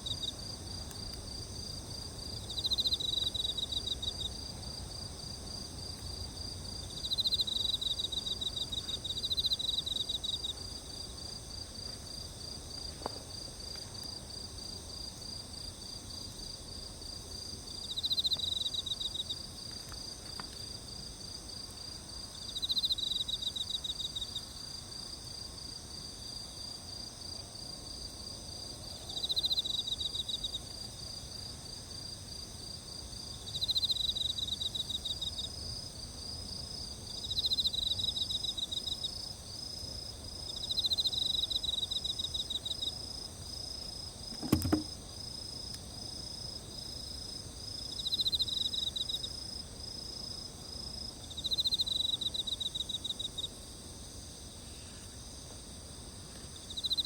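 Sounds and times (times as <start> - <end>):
crickets chirping: 0.0 - 57.0
insects trilling: 40.4 - 53.6, 56.2 - 57.0
sharp pop: 44.4 - 44.9.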